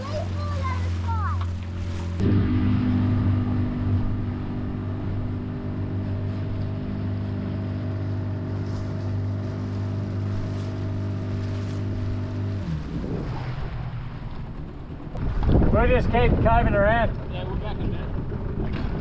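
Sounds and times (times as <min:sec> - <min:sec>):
water rushing: 0:00.0 - 0:16.5
outboard motor running: 0:00.0 - 0:19.0
wind: 0:00.0 - 0:19.0.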